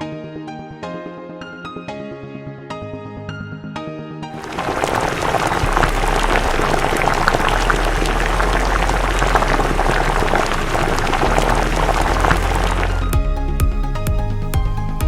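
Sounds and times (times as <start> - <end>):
food sizzling and bubbling: 4.4 - 13.1.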